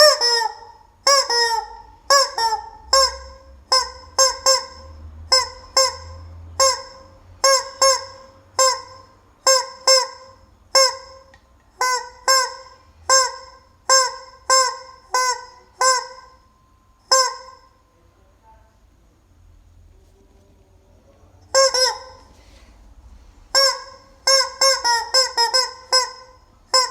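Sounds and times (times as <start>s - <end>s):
rubber chicken toy squawking: 0.0s - 16.4s, 17.1s - 17.7s, 21.5s - 22.3s, 23.5s - 26.9s.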